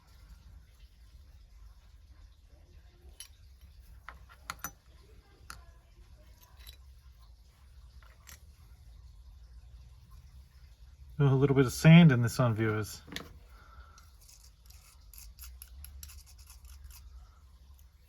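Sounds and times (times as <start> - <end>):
low steady hum: 0.0 - 18.0
toy car parts clicking: 14.0 - 17.9.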